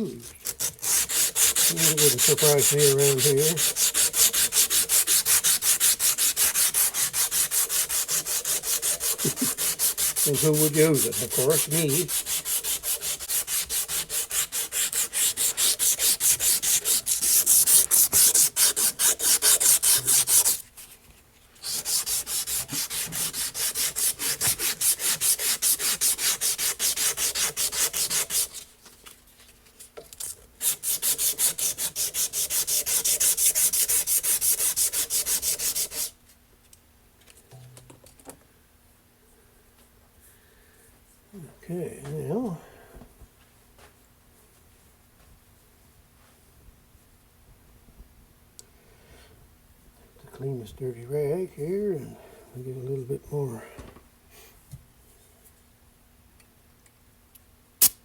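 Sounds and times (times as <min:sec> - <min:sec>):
emery cloth rubbing on metal shaft: 0:00.8 - 0:20.6.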